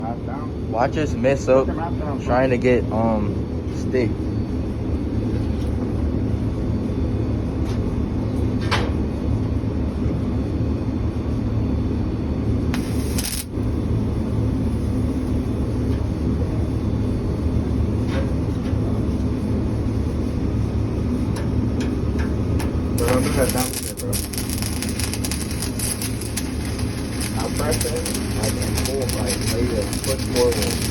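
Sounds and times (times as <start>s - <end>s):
low machine drone and rumble: 0.0s - 30.9s
hiss: 12.8s - 13.5s.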